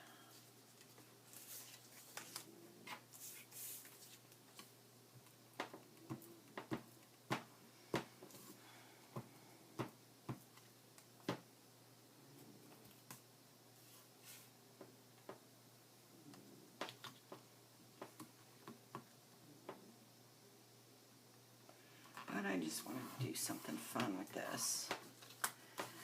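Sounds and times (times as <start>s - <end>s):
paper rustling: 0.7s - 4.7s.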